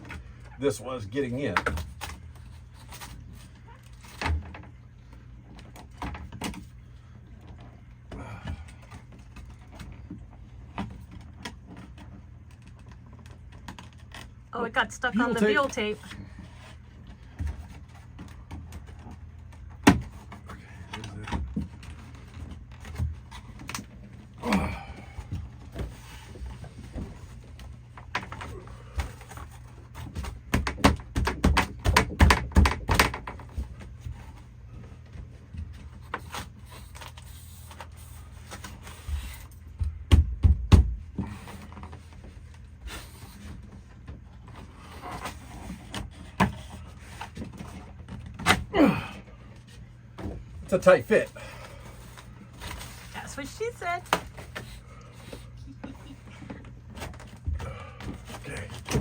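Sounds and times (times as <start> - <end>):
knocking and scraping wooden panel: 25.3 - 34.4.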